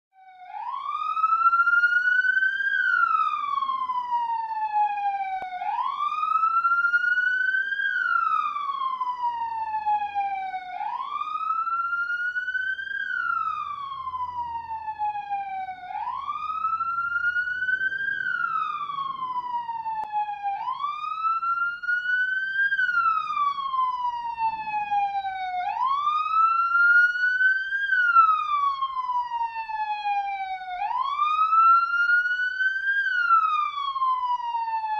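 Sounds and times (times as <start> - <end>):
police siren wailing: 0.2 - 34.9.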